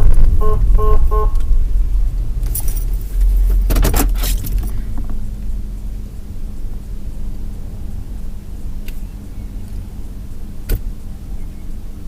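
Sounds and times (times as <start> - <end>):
vehicle engine rumbling: 0.0 - 12.0
jingling rattling clicks: 2.4 - 5.2.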